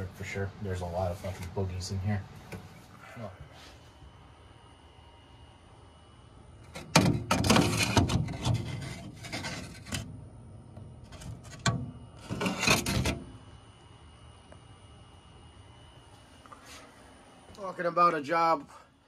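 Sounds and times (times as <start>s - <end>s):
tools rubbing and scraping: 6.6s - 10.1s, 11.0s - 13.3s.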